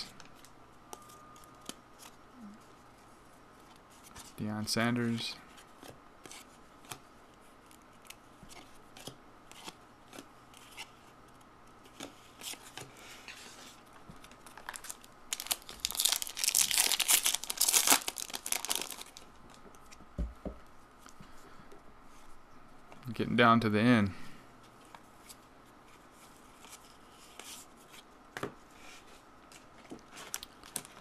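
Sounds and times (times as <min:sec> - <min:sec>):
wrapper tearing and crinkling: 0:14.4 - 0:19.3.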